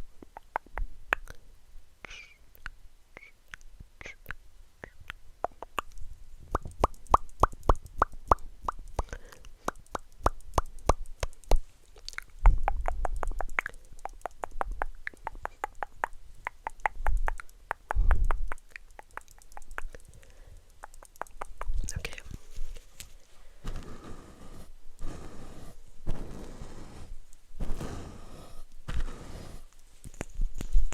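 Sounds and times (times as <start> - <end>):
wet mouth clicks and pops: 0.2 - 1.4, 2.1 - 23.1
hollow pitched pops: 5.4 - 11.6, 12.4 - 20.0.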